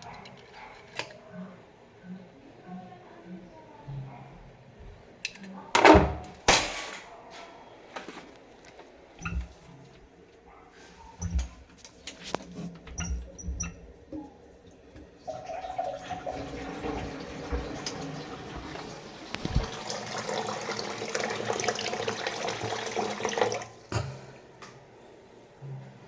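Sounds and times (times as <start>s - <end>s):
water running from faucet: 15.2s - 23.8s.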